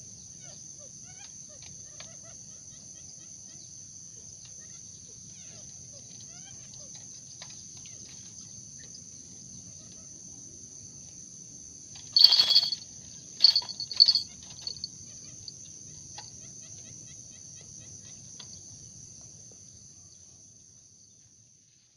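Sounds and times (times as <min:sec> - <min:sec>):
insects trilling: 0:11.9 - 0:12.8, 0:13.4 - 0:18.8.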